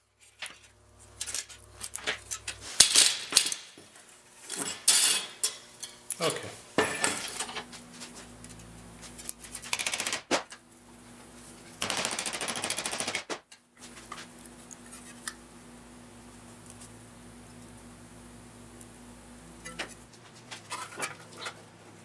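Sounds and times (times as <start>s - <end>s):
power tool rattling on sheet steel: 9.5s - 10.6s, 11.8s - 13.5s
low steady hum: 13.7s - 22.0s.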